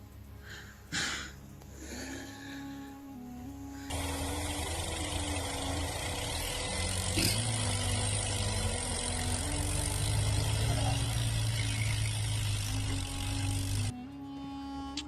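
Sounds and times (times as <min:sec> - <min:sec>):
engine rumble: 0:03.8 - 0:14.0.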